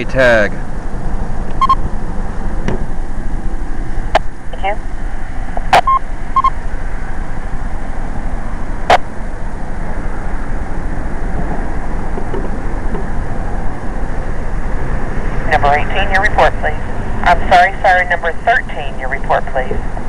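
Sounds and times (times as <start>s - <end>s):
short beeps: 1.6s - 1.8s, 5.7s - 6.6s
radio static hiss: 4.1s - 4.8s, 15.4s - 19.9s.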